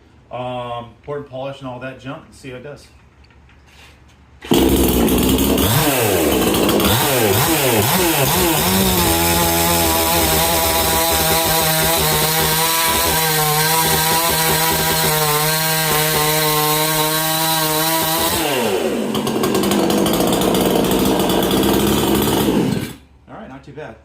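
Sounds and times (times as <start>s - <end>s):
chainsaw revving and cutting wood: 4.4s - 23.1s.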